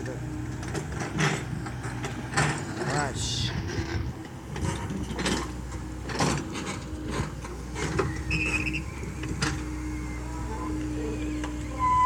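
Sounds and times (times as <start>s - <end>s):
excavator engine running: 0.0s - 12.0s
sharp knocks and clanks: 0.5s - 3.1s.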